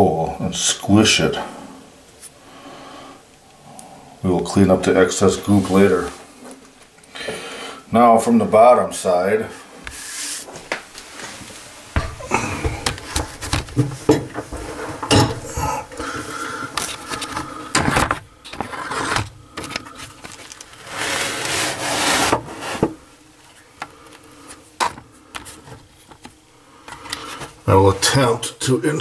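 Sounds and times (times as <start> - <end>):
scraping rustle: 9.5 - 23.7
clunks and knocks on pipes: 12.0 - 15.7.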